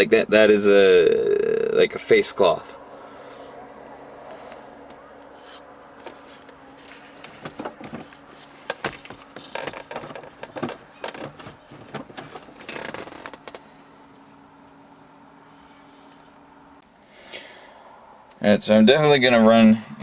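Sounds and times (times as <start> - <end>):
faint steady hum: 0.0 - 20.0
hands handling parts: 4.5 - 13.6.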